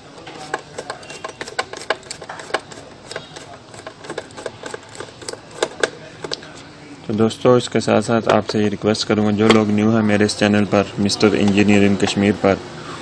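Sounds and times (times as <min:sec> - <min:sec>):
screwdriver clicking and creaking: 0:00.2 - 0:06.5.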